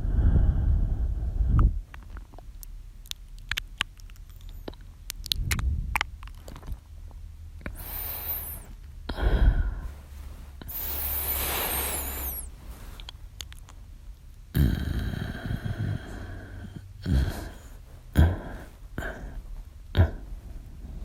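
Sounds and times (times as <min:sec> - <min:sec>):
man breathing: 0:00.0 - 0:01.8, 0:07.7 - 0:13.0, 0:15.3 - 0:21.0
wet lip and tongue clicks: 0:01.9 - 0:06.8, 0:13.0 - 0:14.4.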